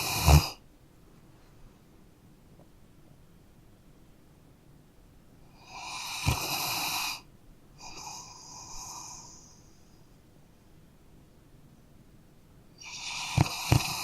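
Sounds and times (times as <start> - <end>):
dog snoring: 0.0 - 0.6, 5.5 - 9.8, 12.8 - 14.0.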